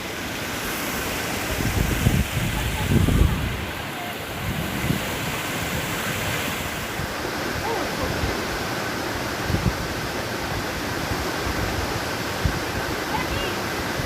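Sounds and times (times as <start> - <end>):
waterfall rushing: 0.0 - 14.0
wind buffeting microphone: 1.4 - 8.6, 9.2 - 14.0.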